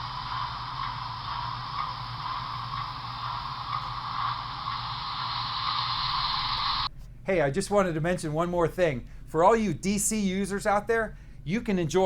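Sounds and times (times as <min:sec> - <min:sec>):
low hum: 0:00.0 - 0:06.9
model locomotive steam hiss: 0:00.0 - 0:06.9.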